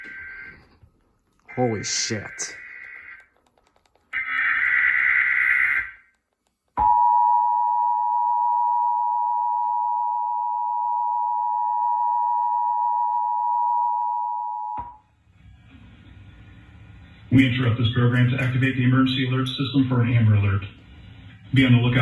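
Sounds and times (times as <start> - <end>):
two-tone attention signal: 6.8 - 15.0.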